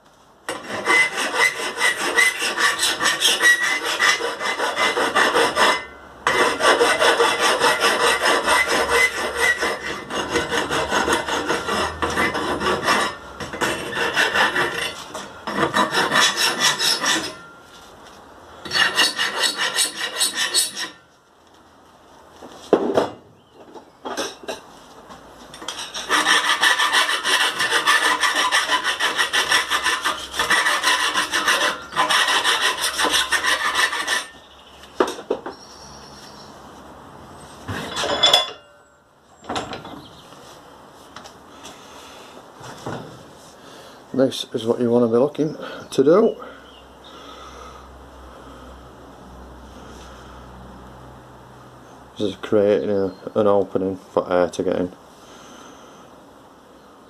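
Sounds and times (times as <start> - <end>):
hand file rasping on steel pipe: 0.5 - 17.6, 18.6 - 21.0, 25.6 - 34.4.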